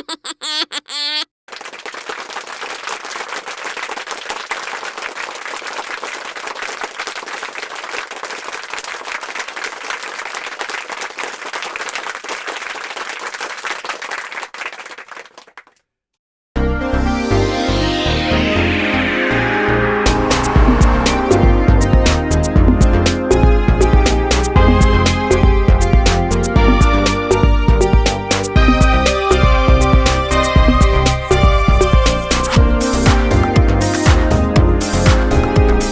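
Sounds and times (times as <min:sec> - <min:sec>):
audience applause: 0:01.5 - 0:15.7.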